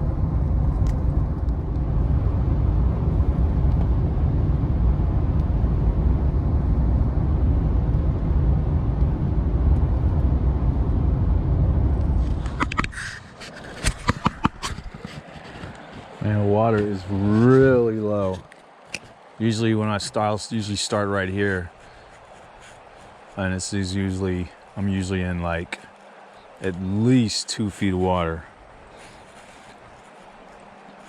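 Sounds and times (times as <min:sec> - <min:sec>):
car engine and road noise: 0:00.0 - 0:13.0.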